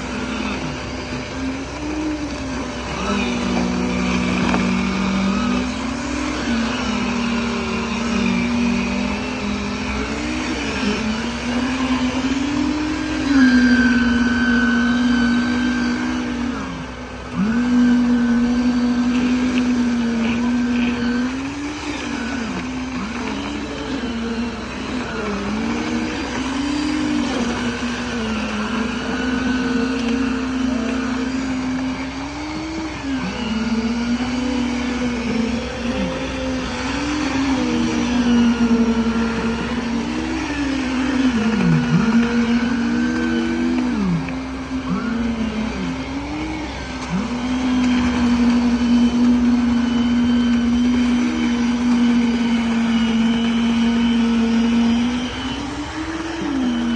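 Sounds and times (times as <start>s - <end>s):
motor running under changing load: 0.0s - 56.9s.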